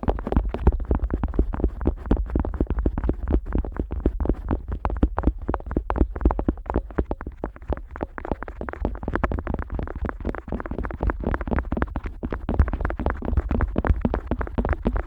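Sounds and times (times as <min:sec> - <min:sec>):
scraping and tapping on microphone: 0:00.0 - 0:15.0.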